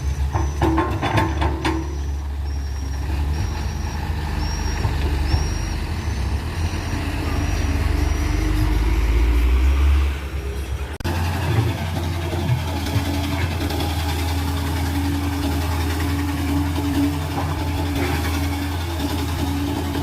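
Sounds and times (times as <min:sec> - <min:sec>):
short high squeak: 0:00.0 - 0:09.6
excavator diesel engine rumbling: 0:00.0 - 0:20.0.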